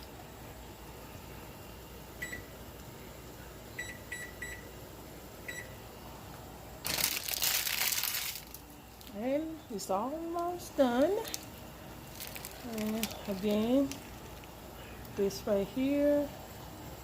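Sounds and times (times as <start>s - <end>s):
packaging crinkling: 6.8s - 9.2s, 11.0s - 11.5s, 12.1s - 15.2s.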